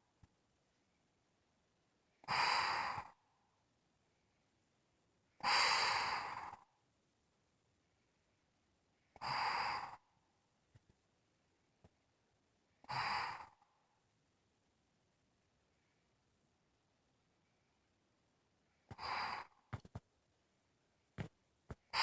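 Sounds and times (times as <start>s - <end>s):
breathy hissing snoring: 2.2s - 3.2s, 5.4s - 6.7s, 9.2s - 10.0s, 12.8s - 13.6s, 18.9s - 19.6s.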